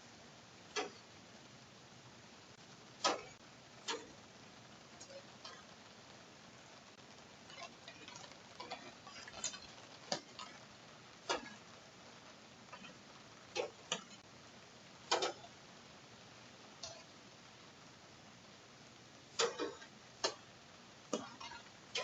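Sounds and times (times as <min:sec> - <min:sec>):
faint steady hiss: 0:00.0 - 0:22.0.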